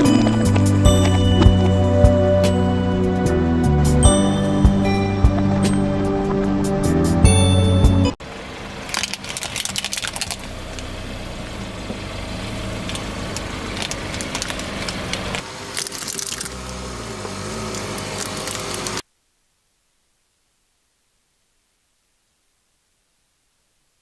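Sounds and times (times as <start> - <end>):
car engine running: 0.0 - 19.0
crackling and snapping: 8.8 - 19.0
tyre crushing crunchy objects: 8.8 - 19.0.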